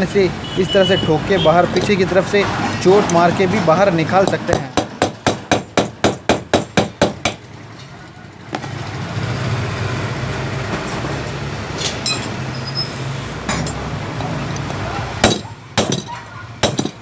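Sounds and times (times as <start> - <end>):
light metallic clinks: 12.0 - 12.4.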